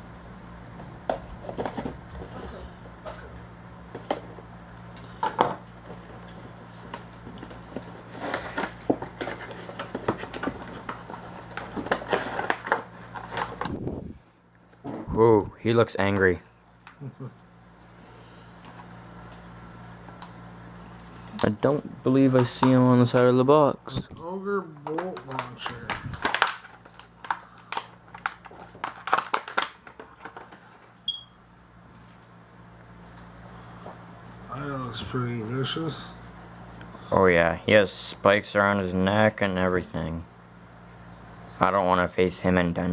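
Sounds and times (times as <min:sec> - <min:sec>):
plastic packaging clicking and crackling: 0:08.3 - 0:13.7, 0:24.7 - 0:30.9.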